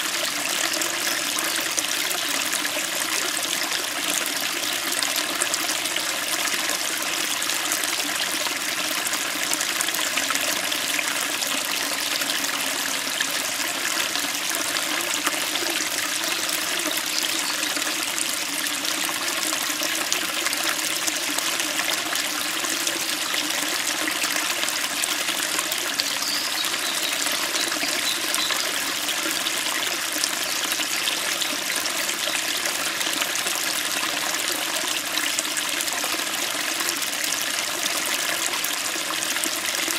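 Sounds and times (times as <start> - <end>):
stream running over rocks: 0.0 - 39.9.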